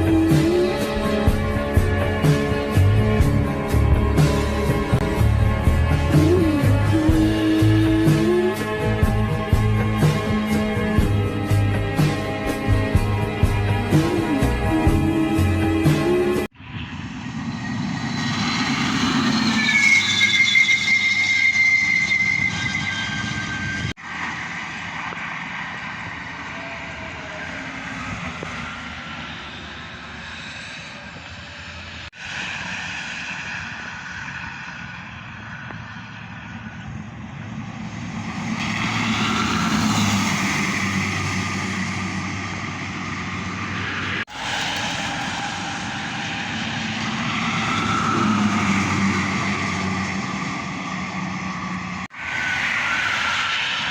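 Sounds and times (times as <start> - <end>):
highway traffic passing: 0.0 - 53.9.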